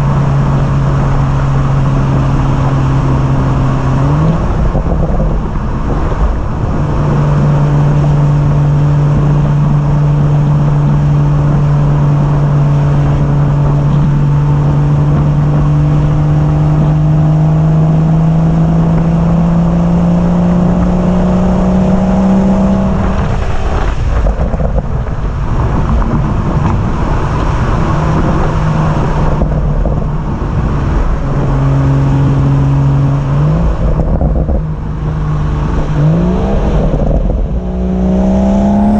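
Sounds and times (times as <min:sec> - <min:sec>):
car engine under load: 0:00.0 - 0:38.9
road and tyre noise: 0:00.0 - 0:38.9.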